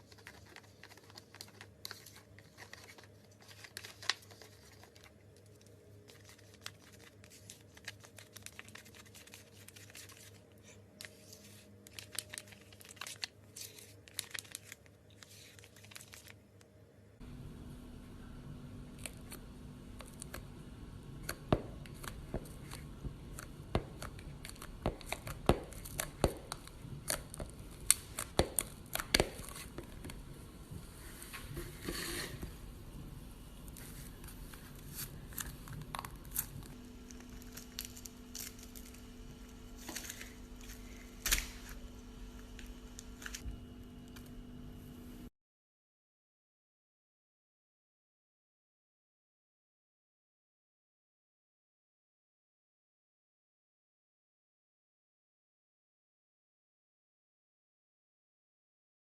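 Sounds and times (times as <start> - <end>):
steady low hum: 16.4 - 45.3
slime popping and crackling: 21.2 - 30.2.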